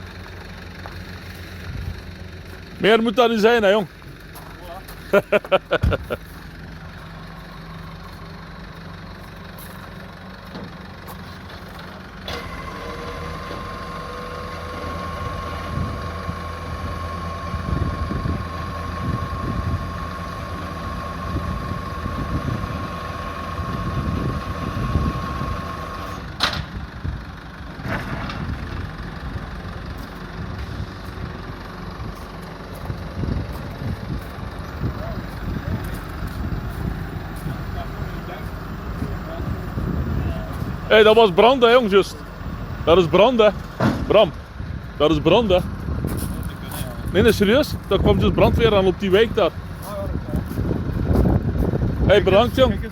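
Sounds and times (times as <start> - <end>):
diesel truck idling: 0.0 - 52.9
hydraulic whine: 12.2 - 15.9
sharp metal clunk: 26.4 - 26.7.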